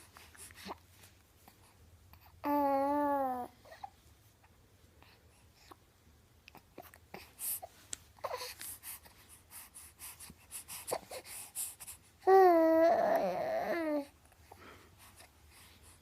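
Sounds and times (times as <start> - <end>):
baby making breathy sounds: 6.5 - 16.0.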